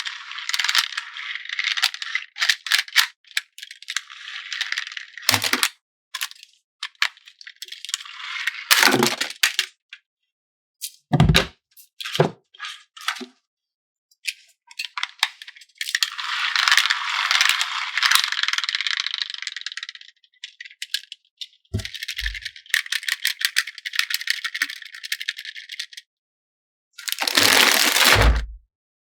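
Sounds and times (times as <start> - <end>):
plastic toy parts rattling: 0.0 - 9.8, 14.3 - 26.0, 27.0 - 28.6.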